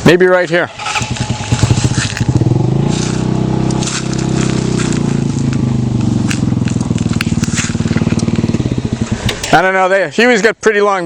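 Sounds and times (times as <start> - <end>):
motorcycle engine running: 0.5 - 9.8
crackling clicks: 4.1 - 9.6.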